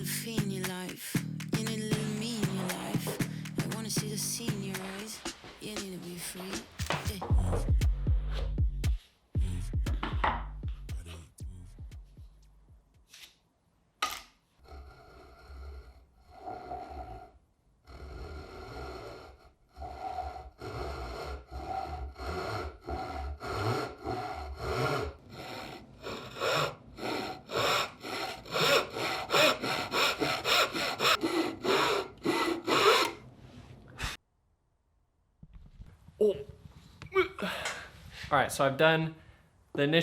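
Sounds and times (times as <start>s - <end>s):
hand saw cutting wood: 1.6s - 3.8s, 24.6s - 33.3s.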